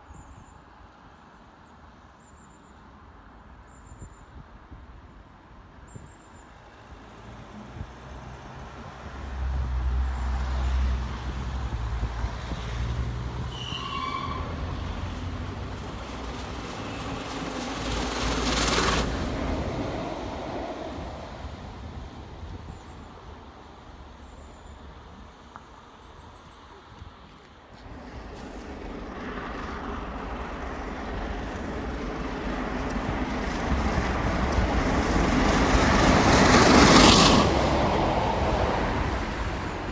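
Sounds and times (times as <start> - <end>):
steam locomotive passing: 6.6 - 25.9, 27.8 - 39.9.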